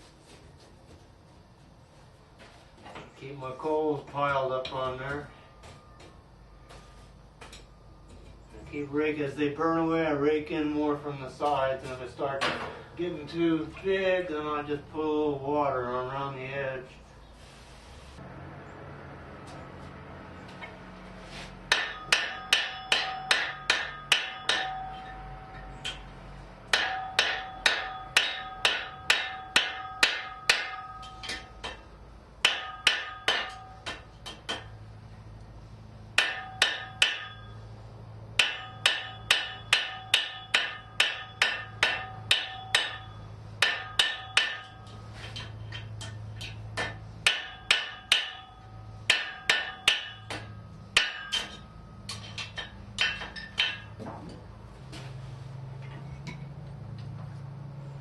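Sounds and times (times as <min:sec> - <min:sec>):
hammer striking steel on anvil: 0:21.6 - 0:34.8, 0:36.2 - 0:37.7, 0:38.4 - 0:54.0.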